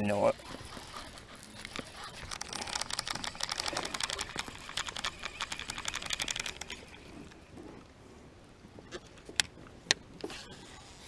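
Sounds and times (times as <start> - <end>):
fishing reel clicking: 0.0 - 7.6.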